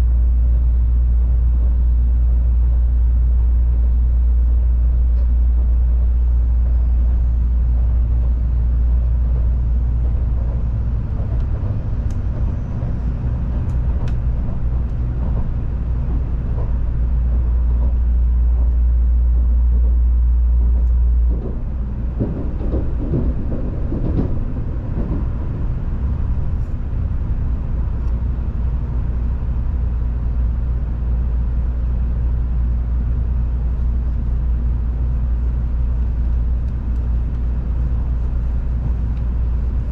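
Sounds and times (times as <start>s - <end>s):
train low rumble and hum: 0.0s - 39.9s.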